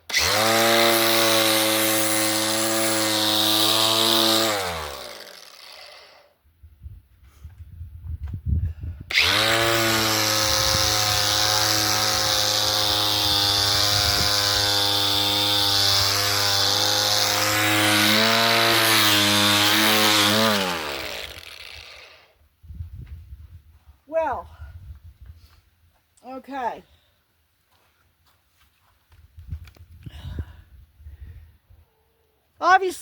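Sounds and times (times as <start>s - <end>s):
angle grinder sanding wood: 0.1s - 6.1s, 9.1s - 22.2s.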